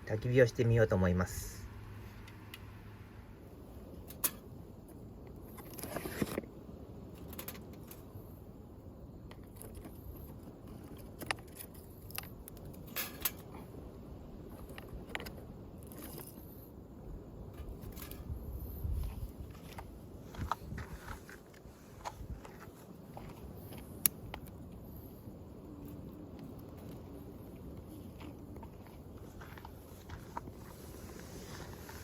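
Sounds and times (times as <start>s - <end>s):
metal parts clicking and clinking: 10.7s - 13.6s
short rustle: 17.6s - 24.0s, 27.8s - 32.0s.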